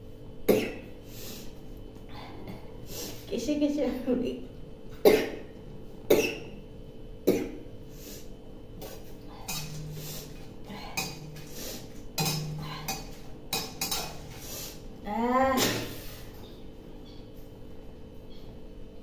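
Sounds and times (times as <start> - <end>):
woman coughing: 0.5 - 0.9, 5.0 - 5.5, 6.1 - 6.6, 7.3 - 7.6
utensil scraping a pan: 9.5 - 14.8.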